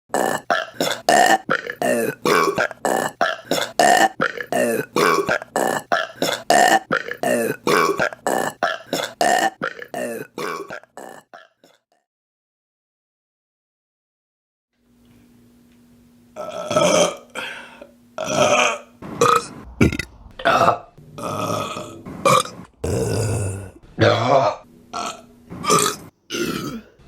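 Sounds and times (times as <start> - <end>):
woman burping rhythmically: 0.1 - 11.8, 16.4 - 17.4, 22.4 - 27.0.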